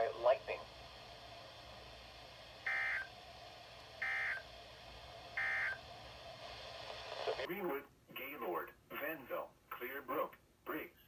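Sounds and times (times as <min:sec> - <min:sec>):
buzzing data tone bursts: 0:02.6 - 0:03.1, 0:04.0 - 0:04.4, 0:05.4 - 0:05.8.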